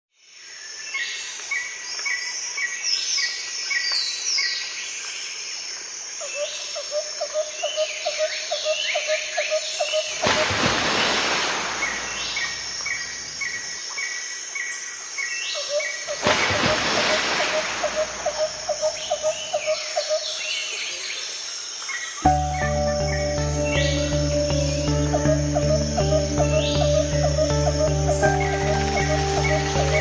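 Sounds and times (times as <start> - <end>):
birds singing and chirping: 17.6 - 21.2, 22.0 - 30.0.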